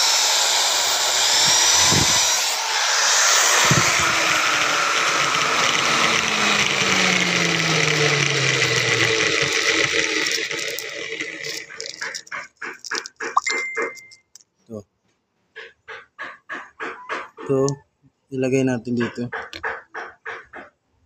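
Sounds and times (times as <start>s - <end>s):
electric drill boring into wood: 0.0s - 13.2s.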